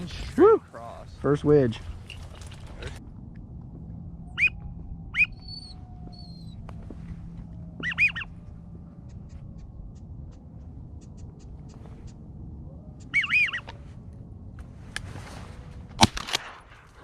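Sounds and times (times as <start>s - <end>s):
faint thin whistles: 4.4s - 4.6s
duck quacking: 7.8s - 8.3s.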